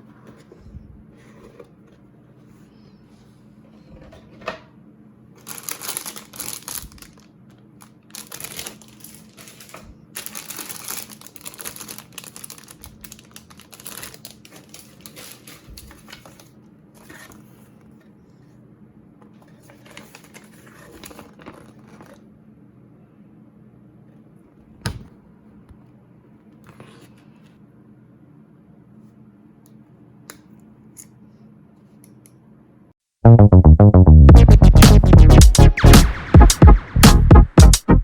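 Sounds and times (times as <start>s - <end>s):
plastic packaging crinkling: 5.4s - 17.3s, 19.7s - 22.2s.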